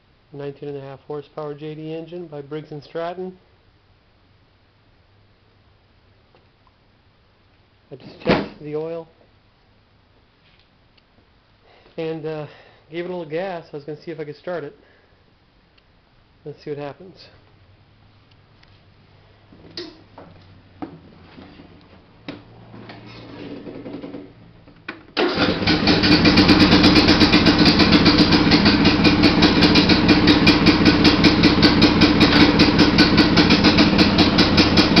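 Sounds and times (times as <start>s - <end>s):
engine cranking whirr: 25.2s - 28.0s
lawn tractor engine running: 25.2s - 35.0s.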